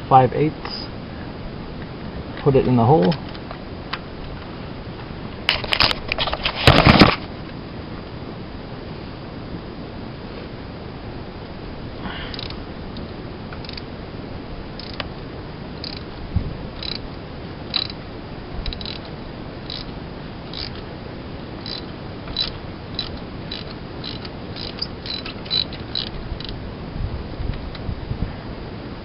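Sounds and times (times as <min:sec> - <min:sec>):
socket ratchet clicking: 0:12.3 - 0:12.6, 0:13.6 - 0:13.8, 0:14.8 - 0:15.1, 0:15.8 - 0:16.1, 0:16.8 - 0:17.0, 0:17.7 - 0:18.0, 0:18.6 - 0:19.1, 0:19.7 - 0:19.9, 0:20.5 - 0:20.8, 0:21.6 - 0:26.6.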